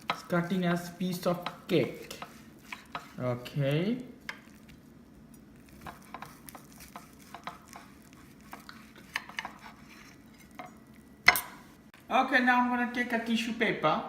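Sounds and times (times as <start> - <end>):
knife slicing meat: 0.0 - 3.3, 4.2 - 11.5.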